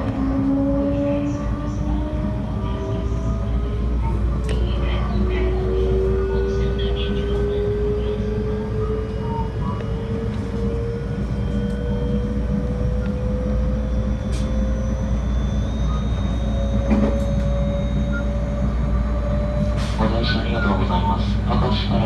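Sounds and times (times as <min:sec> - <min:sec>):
train rumble: 0:00.0 - 0:22.0
rising electric motor whine: 0:05.5 - 0:19.8.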